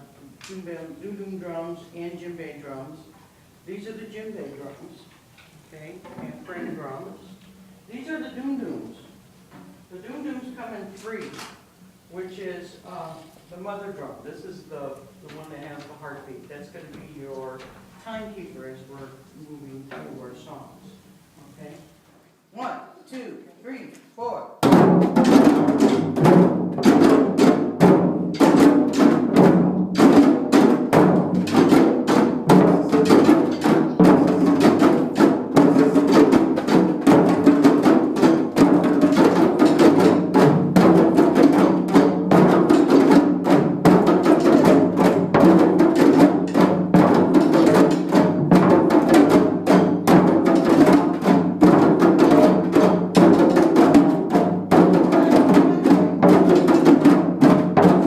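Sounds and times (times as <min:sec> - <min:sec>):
person counting in: 0:22.5 - 0:24.6
hand drums fast rhythm: 0:24.6 - 0:58.0.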